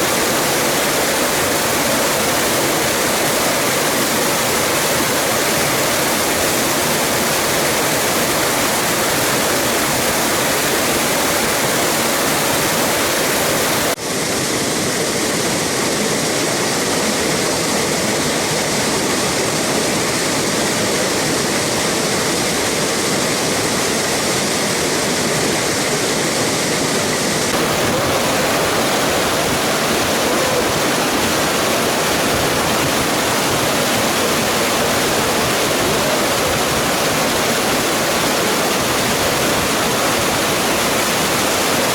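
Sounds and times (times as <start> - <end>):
waterfall rushing: 0.0 - 41.9.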